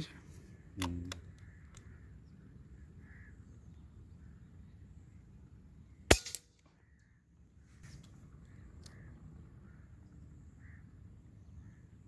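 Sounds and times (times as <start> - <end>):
air rifle shot crack: 6.1 - 6.8.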